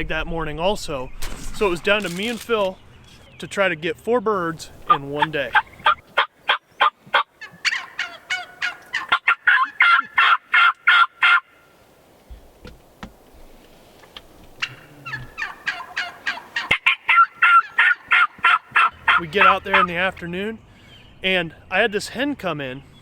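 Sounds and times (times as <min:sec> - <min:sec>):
wild turkeys calling: 0:04.4 - 0:11.8, 0:14.5 - 0:21.2.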